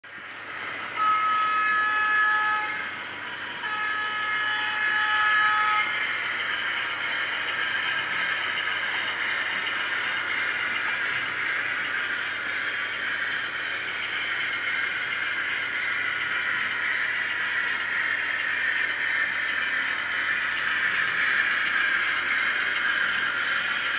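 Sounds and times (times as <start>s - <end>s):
model locomotive horn chord: 1.0s - 2.9s, 3.6s - 6.0s.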